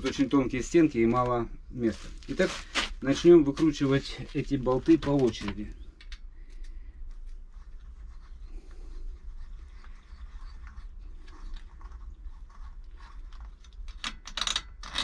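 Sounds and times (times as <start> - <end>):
steady low hum: 0.0 - 14.3
wrench clicking and scraping: 13.9 - 15.0.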